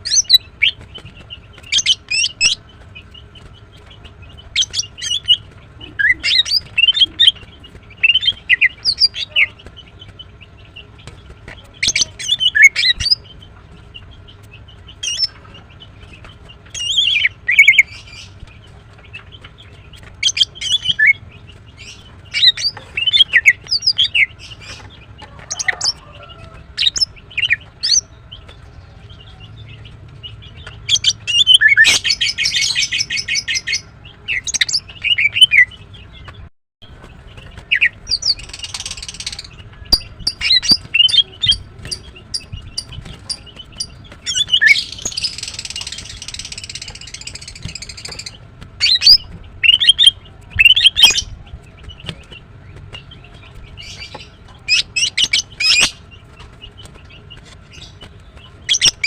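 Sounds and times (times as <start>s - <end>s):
bird chirping and whistling: 0.0s - 0.8s, 4.6s - 9.5s, 11.8s - 13.2s, 16.8s - 18.3s, 21.9s - 24.8s, 30.9s - 33.8s, 37.6s - 51.3s, 54.7s - 56.0s, 58.7s - 59.0s.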